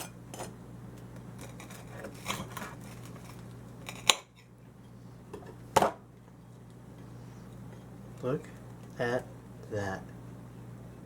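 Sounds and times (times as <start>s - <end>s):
steady low hum: 0.0s - 11.0s
utensil scraping crisp toast: 1.3s - 4.5s.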